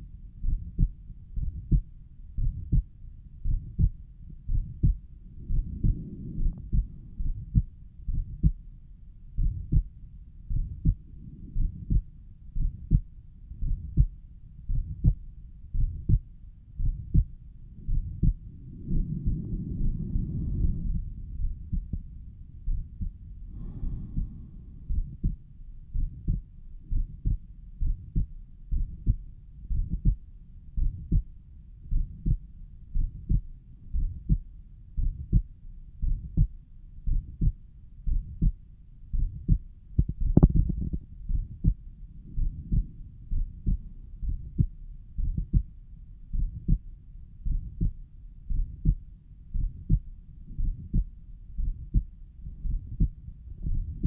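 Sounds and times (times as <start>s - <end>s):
heartbeat thumps: 0.0s - 8.7s, 9.4s - 30.2s, 30.8s - 31.3s, 31.9s - 54.0s
low whooshing murmur: 17.8s - 21.5s.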